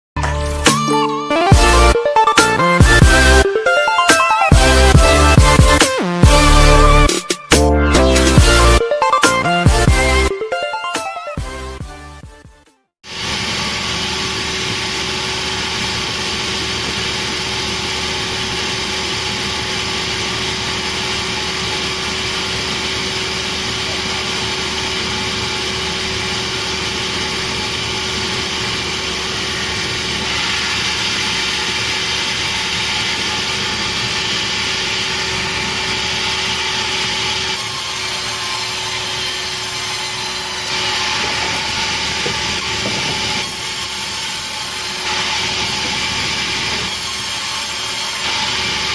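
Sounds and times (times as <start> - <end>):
machine hum: 13.1 - 48.9
sawing hiss: 13.1 - 48.9.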